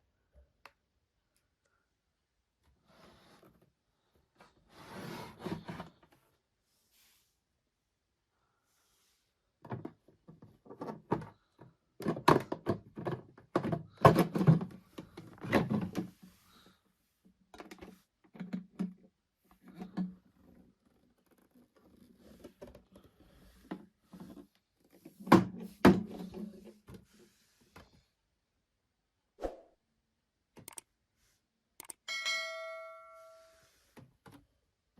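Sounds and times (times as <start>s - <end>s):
objects being handled and set down: 9.6s - 16.6s.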